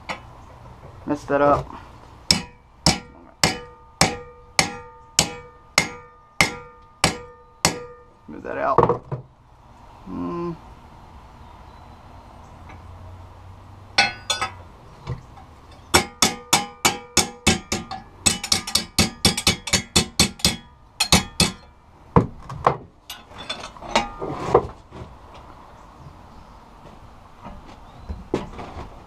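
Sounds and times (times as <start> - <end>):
hammer striking steel bar: 2.3 - 8.1, 14.0 - 14.6, 15.8 - 21.7.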